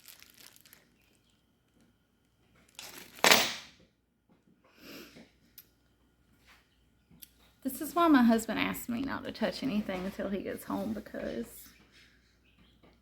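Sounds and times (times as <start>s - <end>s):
plastic packaging crinkling: 0.0s - 1.4s, 2.6s - 3.3s.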